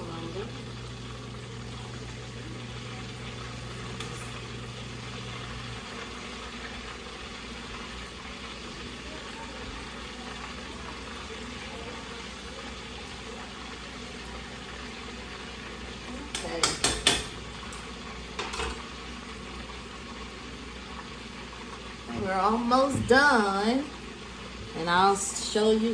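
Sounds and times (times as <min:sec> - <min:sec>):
low steady hum: 0:00.0 - 0:08.0
fish deep-frying in oil: 0:00.0 - 0:25.9.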